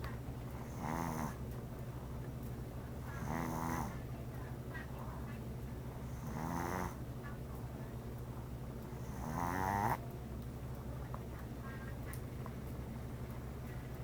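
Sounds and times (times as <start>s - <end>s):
pet snoring: 0.6s - 1.4s, 3.1s - 4.0s, 6.0s - 7.0s, 9.0s - 10.0s.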